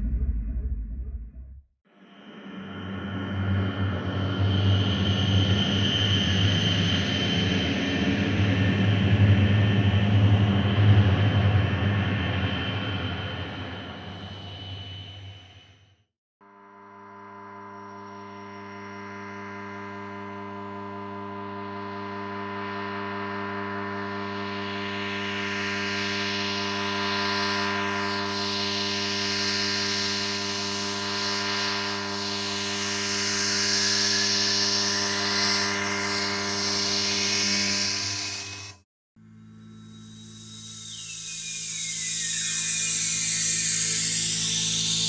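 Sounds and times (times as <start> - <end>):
rising whine: 24.4 - 38.8, 39.4 - 45.0
low humming drone: 27.4 - 45.0.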